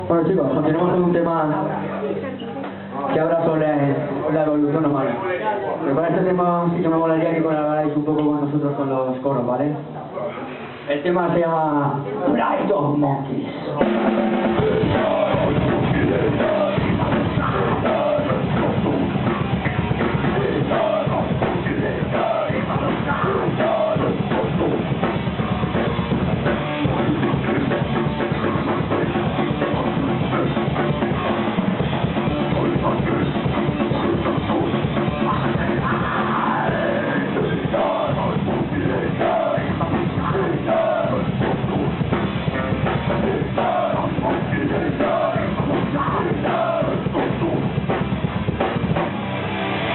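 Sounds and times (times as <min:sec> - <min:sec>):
drum kit beat: 0:13.8 - 0:49.9
heavy metal band playing live: 0:13.8 - 0:49.9.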